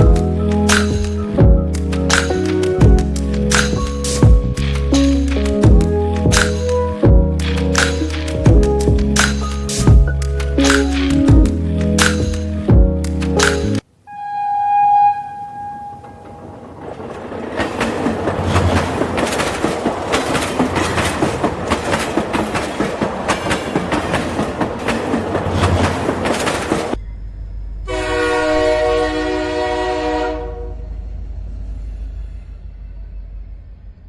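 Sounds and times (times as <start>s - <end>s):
train whistle: 14.0s - 16.7s, 27.9s - 31.0s
train horn blast: 14.0s - 16.8s, 27.9s - 31.0s
train wheels clattering: 15.2s - 27.0s.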